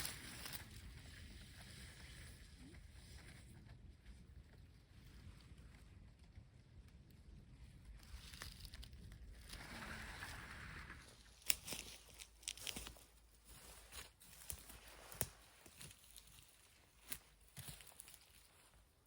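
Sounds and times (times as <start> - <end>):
dry leaves rustling: 0.0 - 1.0, 11.0 - 18.9
twigs snapping and crunching: 8.0 - 9.6, 11.3 - 18.5.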